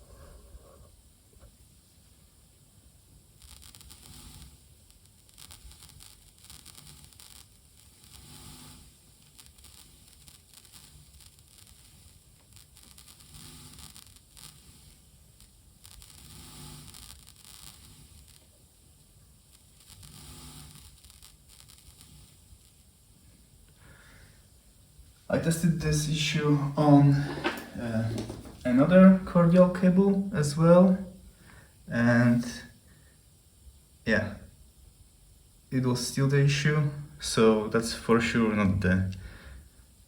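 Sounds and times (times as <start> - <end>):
mixer output crackling and popping: 3.2 - 31.6.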